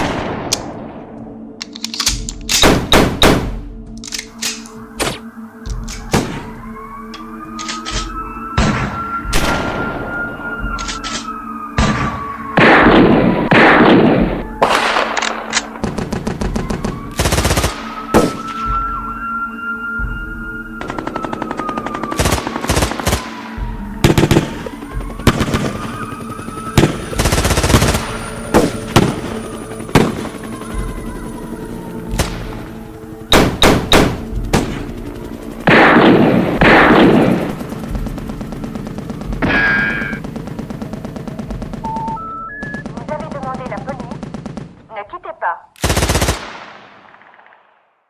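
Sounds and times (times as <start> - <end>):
gunshots: 2.5 - 3.6, 11.8 - 16.4, 33.3 - 34.8
faint wailing tone: 4.1 - 13.5, 16.4 - 33.3
loud blasts with rumble: 20.7 - 31.2
automatic gunfire bursts: 45.8 - 46.7.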